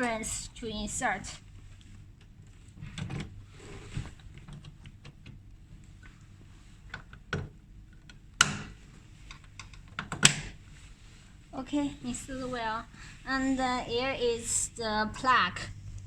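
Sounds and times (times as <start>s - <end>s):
plastic parts clicking and knocking: 6.9s - 10.5s.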